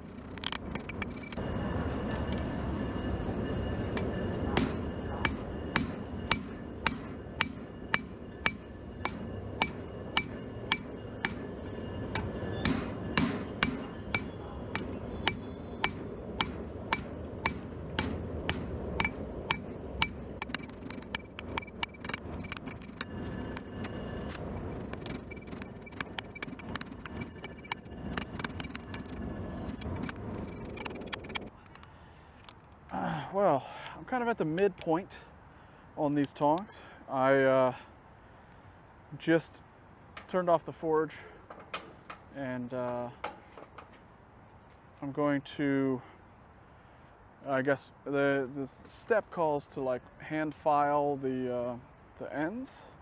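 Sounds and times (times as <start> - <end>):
forge roaring: 1.3 - 31.5
hammer striking steel on anvil: 3.2 - 24.0.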